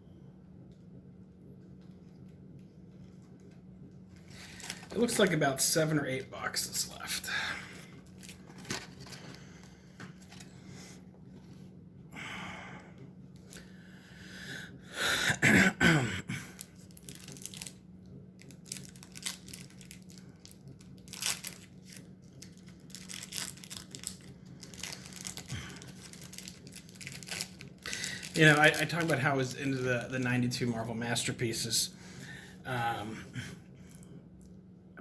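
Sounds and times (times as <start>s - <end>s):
faint low hum: 0.0s - 35.0s
card wrappers crinkling and tearing: 4.2s - 10.5s, 16.5s - 30.6s
person coughing: 15.1s - 16.6s.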